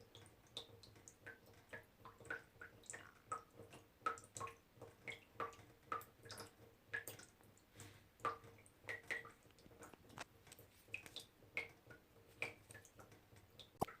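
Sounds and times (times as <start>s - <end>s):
water droplets dripping into water: 0.0s - 14.0s.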